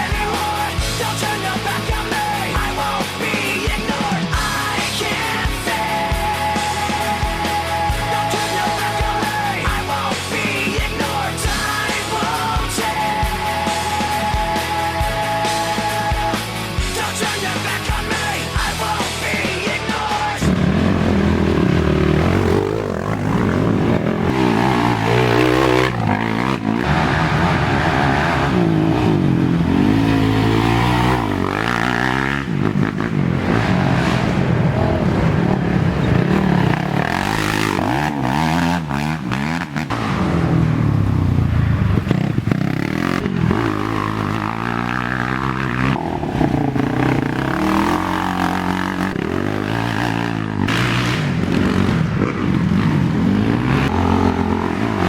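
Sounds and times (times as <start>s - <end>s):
atv engines revving: 0.0s - 55.0s.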